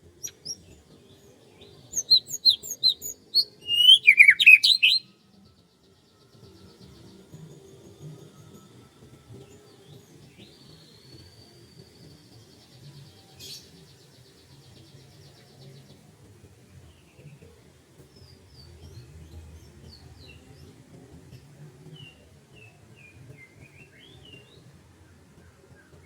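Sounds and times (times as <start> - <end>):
birds calling: 2.0 - 5.0.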